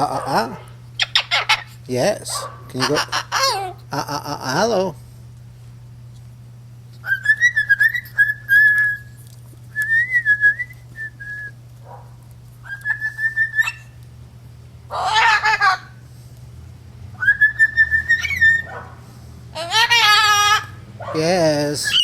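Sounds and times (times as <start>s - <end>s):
cockatoo fluttering chatter: 0.0s - 4.7s, 14.9s - 16.0s, 17.2s - 22.0s
cockatoo lower call: 2.4s - 4.1s, 14.9s - 16.0s, 17.2s - 18.9s, 19.5s - 21.2s, 21.8s - 22.0s.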